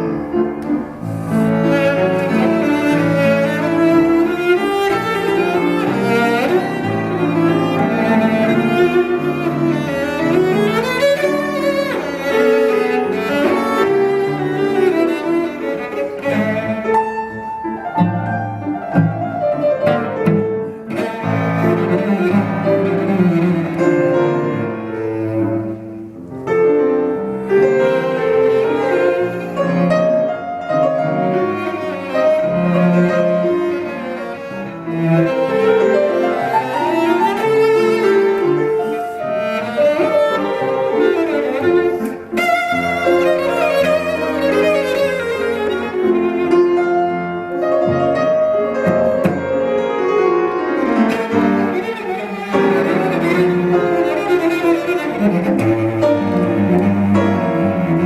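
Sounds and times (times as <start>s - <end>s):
bowed cello: 0.0s - 58.0s
piano accompaniment: 0.0s - 58.0s.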